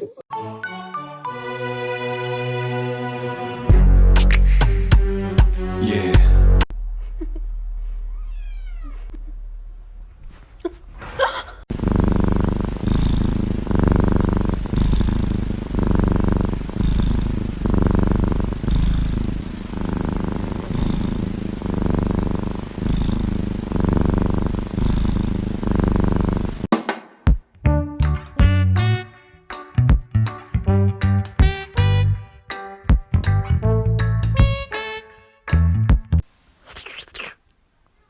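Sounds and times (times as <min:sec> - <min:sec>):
cat purring loudly: 0:11.7 - 0:26.7.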